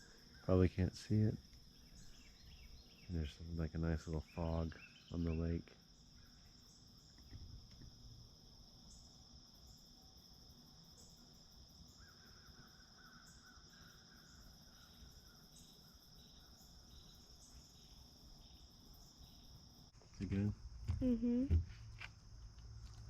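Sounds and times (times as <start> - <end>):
crickets trilling: 0.0 - 23.0
lower rapid insect trill: 0.0 - 23.0.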